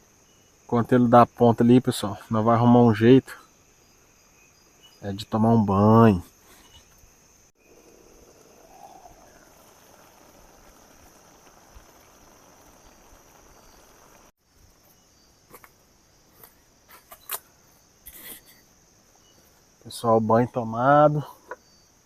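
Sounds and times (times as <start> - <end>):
crickets and night insects trilling: 0.0 - 22.0.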